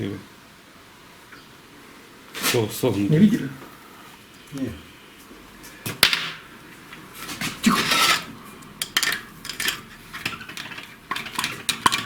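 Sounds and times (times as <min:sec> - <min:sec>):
metal scrape: 0:07.2 - 0:08.4
steel parts clinking: 0:07.7 - 0:12.0.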